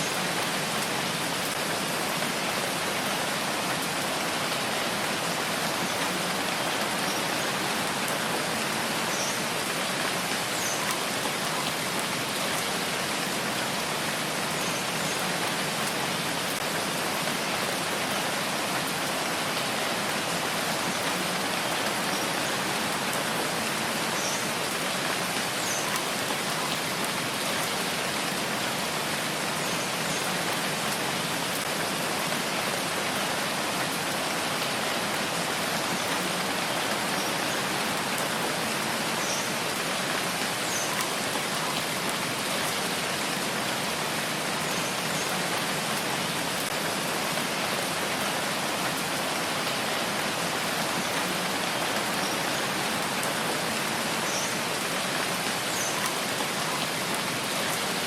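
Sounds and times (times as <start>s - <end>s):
steady rain hiss: 0.0s - 58.0s.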